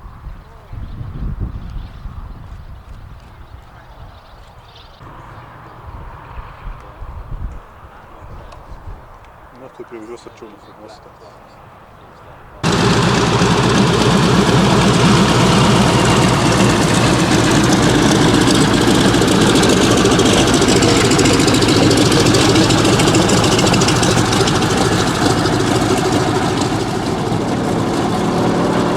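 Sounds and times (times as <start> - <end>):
piston aircraft engine running: 12.6 - 28.9.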